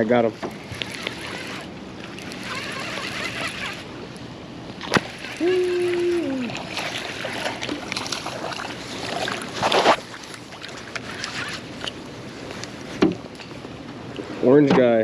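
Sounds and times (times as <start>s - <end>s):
water noise: 0.0s - 14.2s
wind: 0.0s - 15.0s.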